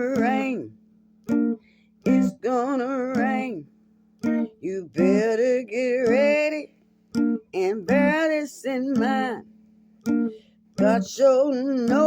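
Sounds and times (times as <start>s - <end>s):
person singing gospel melody: 0.0s - 0.8s, 2.0s - 9.5s, 10.1s - 12.0s
plucked acoustic guitar: 0.0s - 12.0s.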